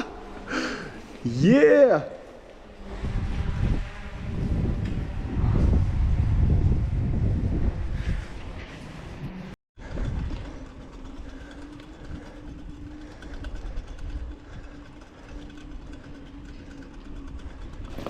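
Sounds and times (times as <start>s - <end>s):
bicycle tyres rolling rumble: 2.2s - 18.0s
bicycle and bags rattling: 7.7s - 18.0s.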